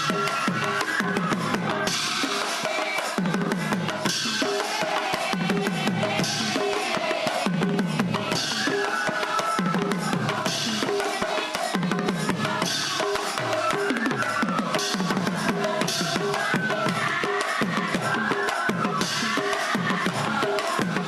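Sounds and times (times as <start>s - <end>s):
drum strokes falling in pitch: 0.0s - 21.0s
hand cymbals clashing: 1.7s - 5.5s.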